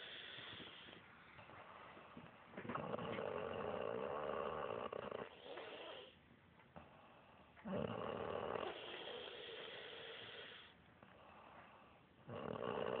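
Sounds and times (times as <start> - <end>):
woman snoring: 7.6 - 10.7, 12.3 - 13.0.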